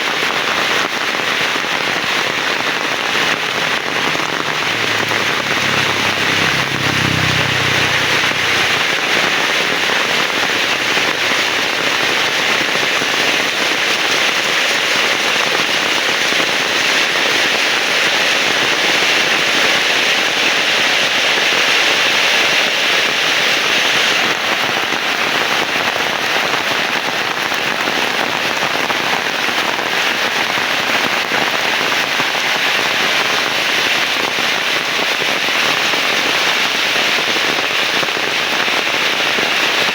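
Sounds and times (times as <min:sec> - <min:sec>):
heavy rain pouring: 0:00.0 - 0:39.9
low rumble: 0:02.8 - 0:11.7.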